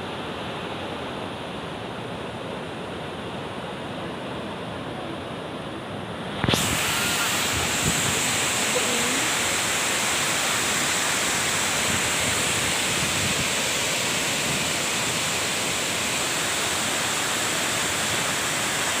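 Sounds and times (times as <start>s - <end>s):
waterfall rushing: 6.2s - 19.0s.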